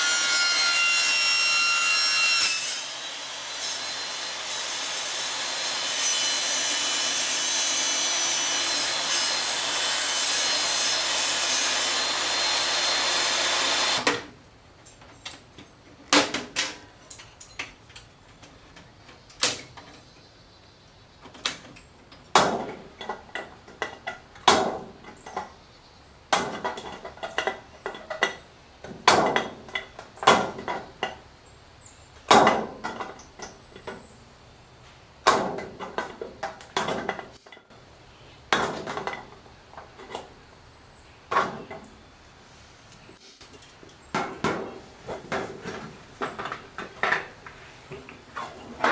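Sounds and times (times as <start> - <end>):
power tool cutting sheet metal: 0.0 - 14.2.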